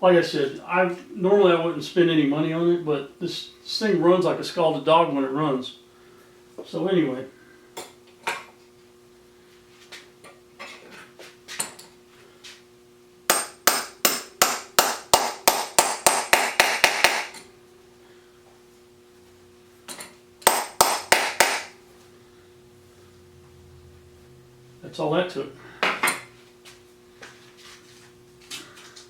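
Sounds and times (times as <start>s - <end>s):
hammer striking metal: 13.3s - 17.4s, 20.4s - 21.8s.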